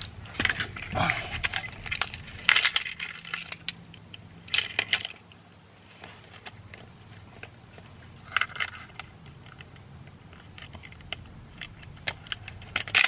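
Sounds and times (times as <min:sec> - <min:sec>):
metal sockets clinking: 0:00.0 - 0:05.4, 0:06.0 - 0:13.0.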